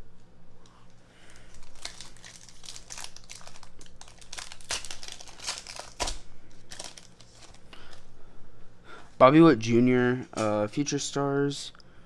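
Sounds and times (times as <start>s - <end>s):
foil wrapper crinkling: 1.2s - 8.1s.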